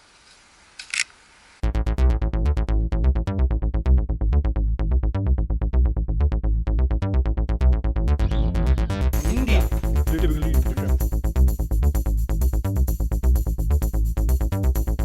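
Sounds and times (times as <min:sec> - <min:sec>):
electronic music with bass beat: 0:06.9 - 0:15.0.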